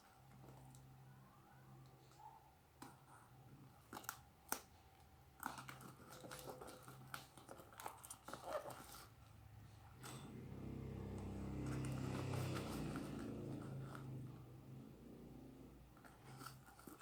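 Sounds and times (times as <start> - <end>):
faint steady hum: 0.0 - 17.0
packaging crinkling and rustling: 5.4 - 9.2.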